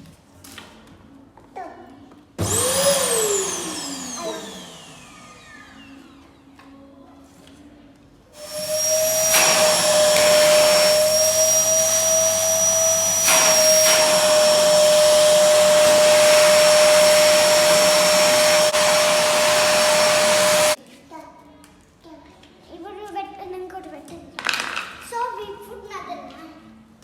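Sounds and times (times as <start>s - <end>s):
vacuum cleaner running: 2.4s - 6.4s, 8.4s - 20.8s.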